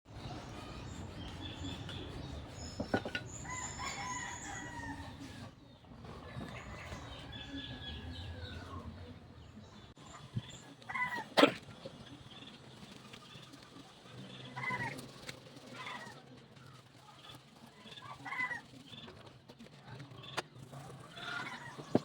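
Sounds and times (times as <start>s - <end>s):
small birds chirping: 0.1s - 22.0s
rooster crowing: 3.4s - 5.3s.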